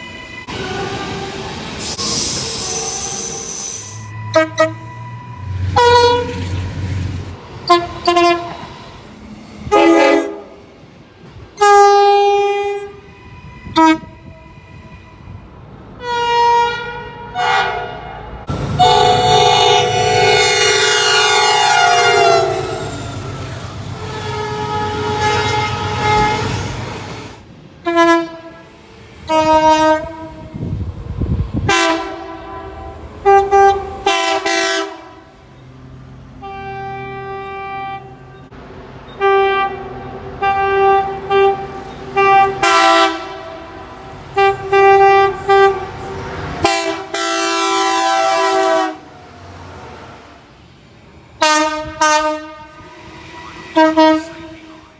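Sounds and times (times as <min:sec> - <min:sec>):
train rumble: 0:00.0 - 0:54.9
train horn blasts: 0:02.7 - 0:06.6, 0:07.6 - 0:08.7, 0:09.6 - 0:10.7, 0:11.6 - 0:15.4, 0:16.0 - 0:26.8, 0:27.8 - 0:28.7, 0:29.3 - 0:30.7, 0:31.6 - 0:35.3, 0:36.4 - 0:38.5, 0:39.1 - 0:49.1, 0:51.4 - 0:54.9.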